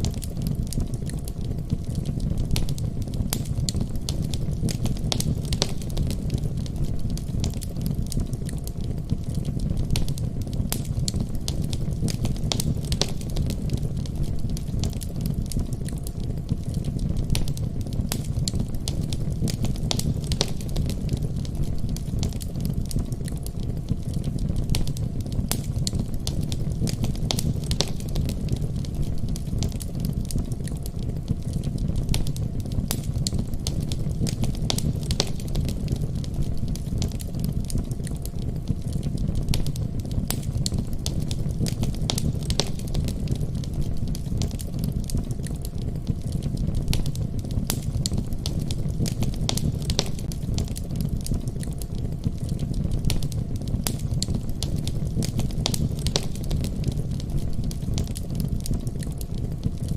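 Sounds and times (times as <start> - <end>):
fire low rumble: 0.0 - 59.9
wood fire crackling and popping: 0.0 - 59.9.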